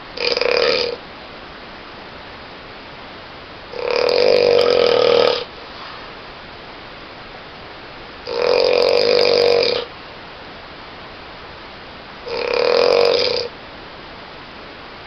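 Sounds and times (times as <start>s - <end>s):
steady hiss: 0.0s - 15.0s
person snoring loudly: 0.2s - 1.0s, 3.7s - 5.5s, 8.2s - 9.9s, 12.2s - 13.5s.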